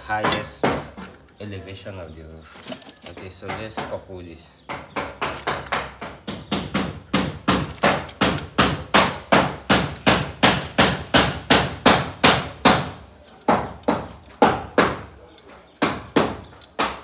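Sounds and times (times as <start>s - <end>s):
hand hammer striking: 0.2s - 1.1s, 4.7s - 17.0s.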